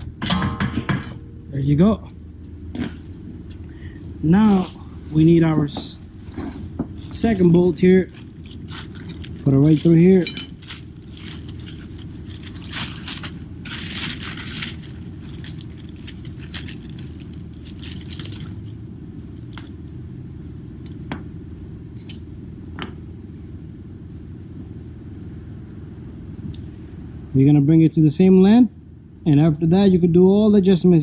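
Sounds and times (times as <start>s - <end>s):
steady low hum: 0.0s - 31.0s
metal scraping and clinking: 8.5s - 14.9s.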